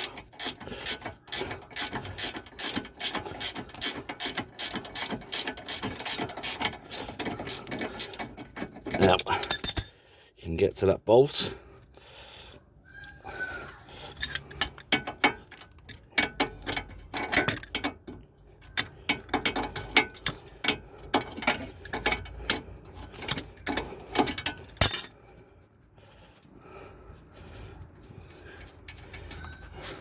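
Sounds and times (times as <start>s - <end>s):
ratchet spanner clicking: 0.0s - 8.4s.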